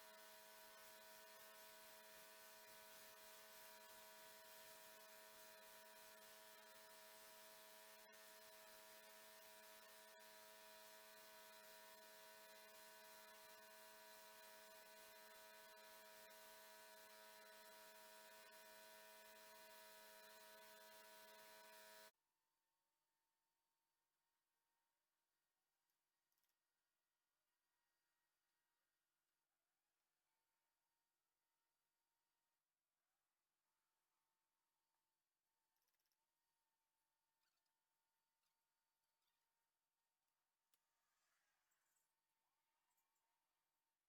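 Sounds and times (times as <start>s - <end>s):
faint steady hum with tones: 0.0s - 22.1s.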